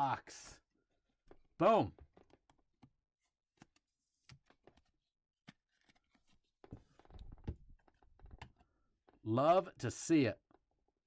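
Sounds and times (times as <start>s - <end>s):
cards rustling and shuffling: 3.4s - 8.4s.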